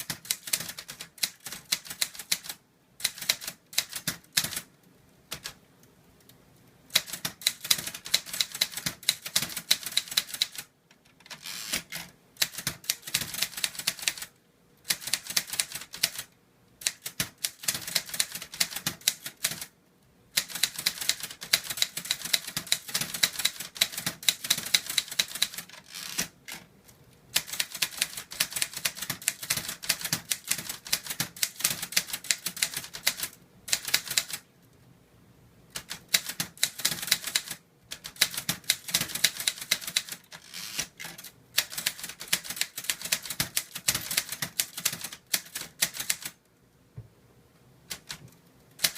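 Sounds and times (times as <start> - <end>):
typewriter keys clacking: 0.0 - 4.7, 6.9 - 10.7, 14.9 - 19.7, 20.4 - 26.6, 27.4 - 34.4, 35.8 - 46.4.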